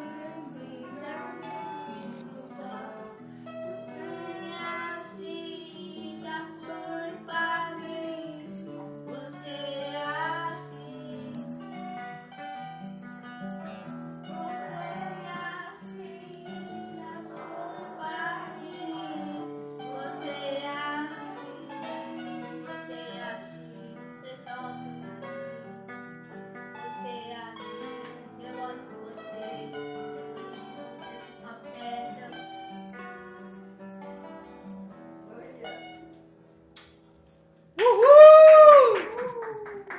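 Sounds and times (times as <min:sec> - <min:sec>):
person singing: 0:00.0 - 0:11.8, 0:14.3 - 0:25.4, 0:26.8 - 0:29.8
plucked guitar: 0:00.0 - 0:39.9.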